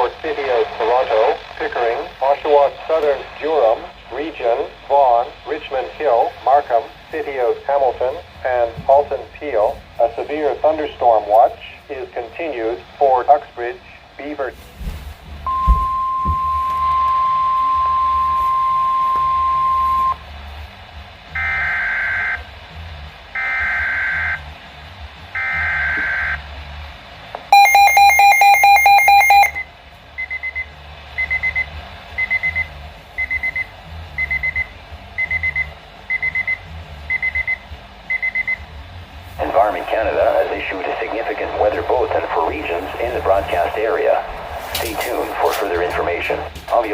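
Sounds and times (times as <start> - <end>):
steady warning tone: 15.4 - 20.2, 21.3 - 22.5, 23.3 - 24.5, 25.3 - 26.5, 27.5 - 38.8
rapid beeping alarm: 15.5 - 20.2, 21.3 - 22.4, 23.4 - 24.4, 25.4 - 26.4, 27.5 - 38.6
short high beeps: 15.5 - 20.2, 27.5 - 29.7
screeching data tones: 27.5 - 29.7.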